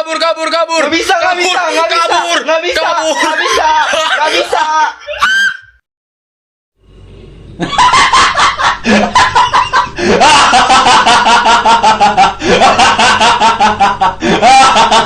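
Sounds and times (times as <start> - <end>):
comic cackling laugh: 1.4 - 5.8, 7.6 - 15.0.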